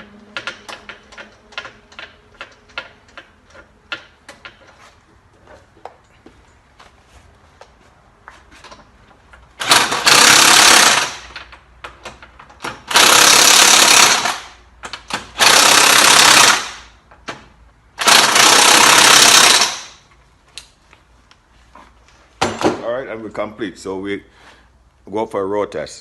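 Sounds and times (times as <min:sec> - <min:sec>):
impact wrench hammering: 0:12.6 - 0:20.0.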